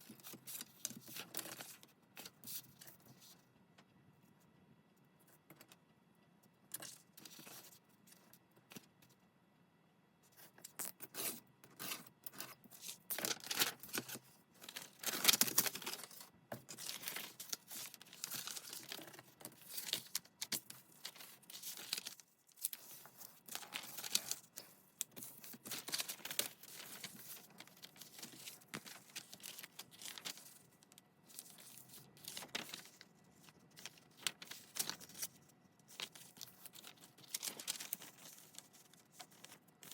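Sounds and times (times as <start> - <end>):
paper rustling and tearing: 12.8 - 30.6, 33.8 - 39.9.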